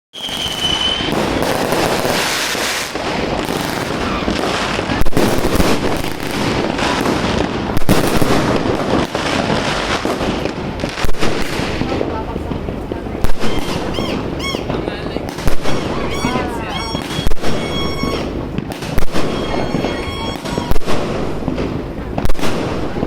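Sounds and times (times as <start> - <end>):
high whistle: 0.1 - 1.5, 13.5 - 14.7, 15.8 - 18.4, 19.2 - 20.8
fireworks crackling: 0.1 - 23.0
loud firework bangs: 0.1 - 23.0.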